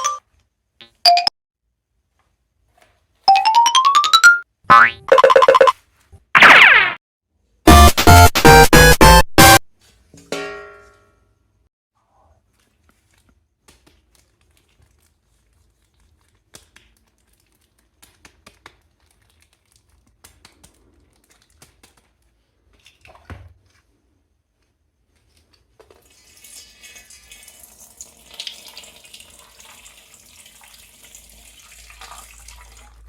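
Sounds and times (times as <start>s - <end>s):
music: 7.7s - 9.6s.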